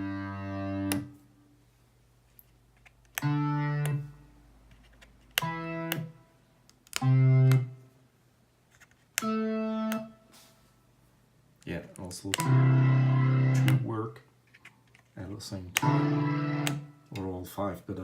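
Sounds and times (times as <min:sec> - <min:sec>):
short synthesized chords: 0:00.0 - 0:01.2, 0:05.4 - 0:06.3, 0:12.4 - 0:13.9, 0:15.8 - 0:17.1
footswitch click: 0:03.1 - 0:04.0, 0:05.3 - 0:07.7, 0:12.2 - 0:12.6, 0:13.6 - 0:13.8, 0:15.7 - 0:16.0.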